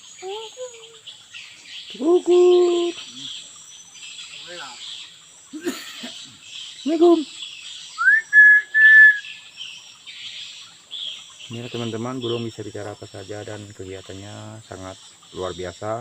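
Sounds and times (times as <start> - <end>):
insects buzzing: 0.0 - 16.0
bird whistle: 8.0 - 9.4.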